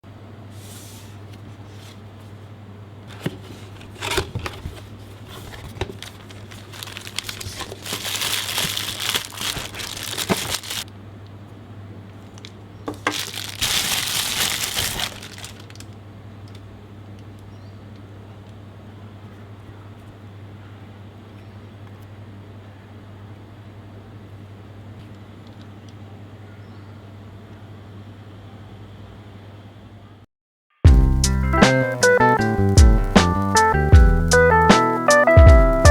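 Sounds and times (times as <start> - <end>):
wrapping crinkling: 3.1 - 10.9, 12.4 - 16.6.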